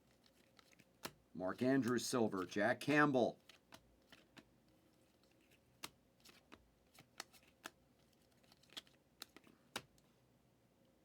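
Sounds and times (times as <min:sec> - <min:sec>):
cards clicking against cards: 0:00.2 - 0:01.2, 0:03.4 - 0:04.5, 0:05.1 - 0:10.0.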